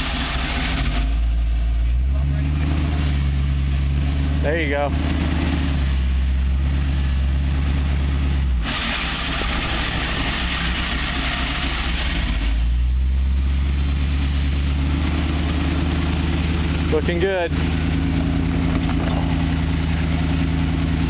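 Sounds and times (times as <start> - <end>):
engine running low: 0.0 - 21.0.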